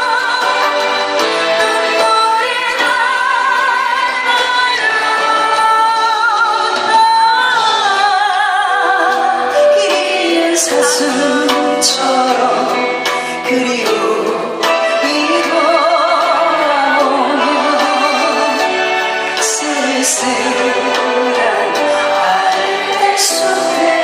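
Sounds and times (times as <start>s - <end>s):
slow ballad with vibrato melody: 0.0s - 24.0s.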